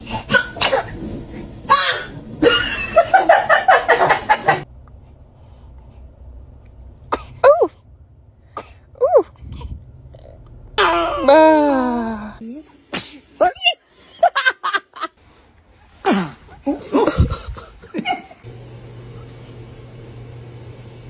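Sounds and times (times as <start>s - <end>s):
baby sneezing: 10.8s - 11.5s, 15.8s - 18.4s.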